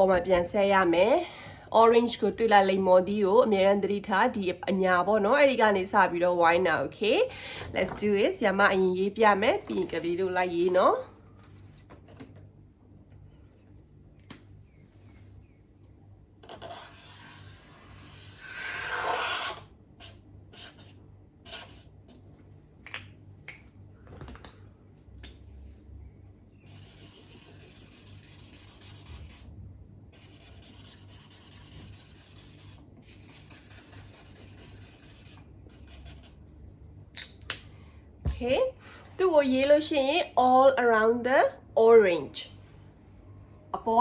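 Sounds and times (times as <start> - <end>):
pen scratching on paper: 16.5 - 21.9, 26.7 - 29.4, 30.2 - 36.4.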